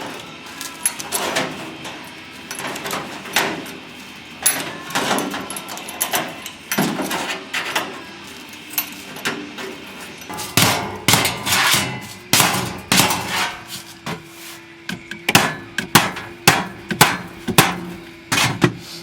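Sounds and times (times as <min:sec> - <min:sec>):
hammer striking sheet steel: 0:00.9 - 0:03.8, 0:04.4 - 0:08.0, 0:09.2 - 0:18.8
metallic ring: 0:04.4 - 0:07.8.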